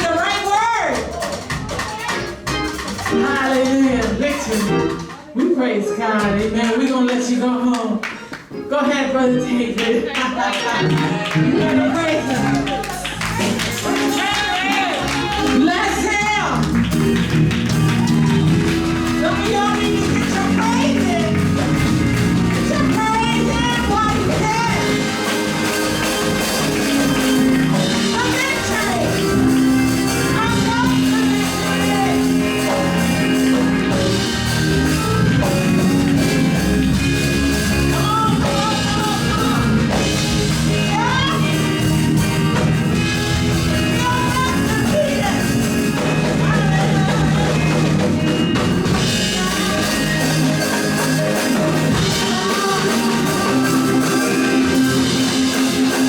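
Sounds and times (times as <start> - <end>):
gospel band playing: 0.0 - 56.0.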